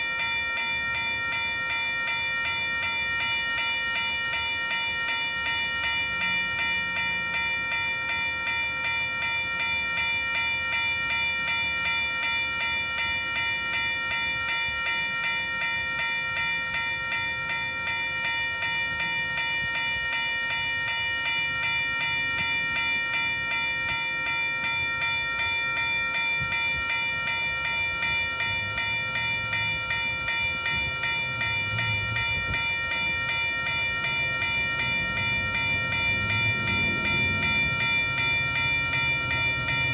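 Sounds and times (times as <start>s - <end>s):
locomotive engine running: 27.7s - 39.9s.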